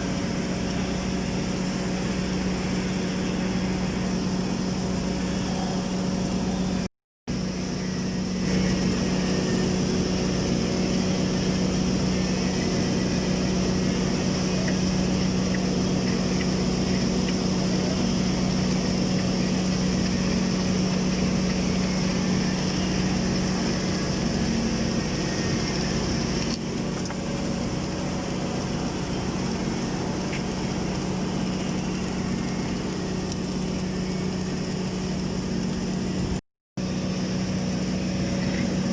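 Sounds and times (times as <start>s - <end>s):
welding machine hum: 0.0s - 38.9s
welding hiss: 7.3s - 36.4s.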